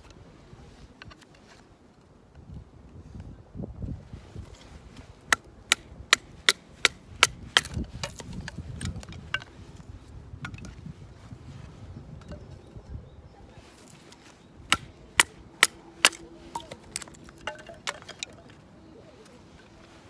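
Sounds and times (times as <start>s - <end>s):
baton knocking knife through log: 5.7s - 9.5s, 14.7s - 18.4s.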